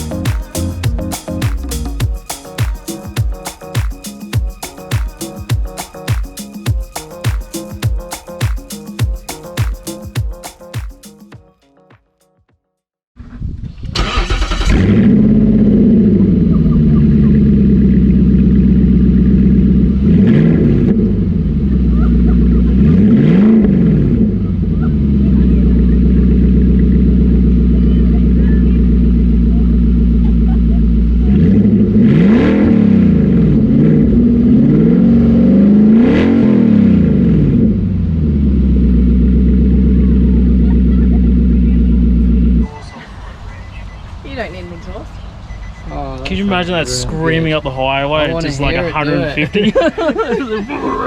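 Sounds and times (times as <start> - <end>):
engine starting and idling: 13.6 - 19.9
engine idling and revving: 14.0 - 42.7.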